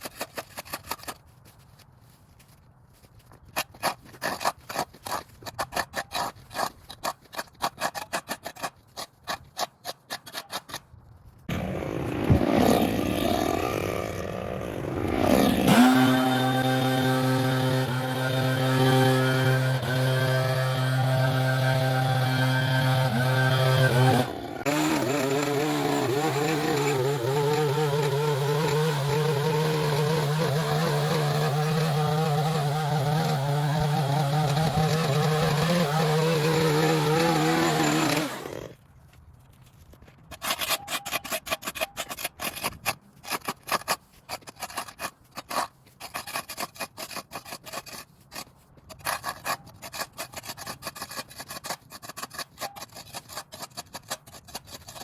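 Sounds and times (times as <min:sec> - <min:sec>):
scraping and rasping: 0:00.0 - 0:55.0
small engine humming: 0:11.5 - 0:38.7.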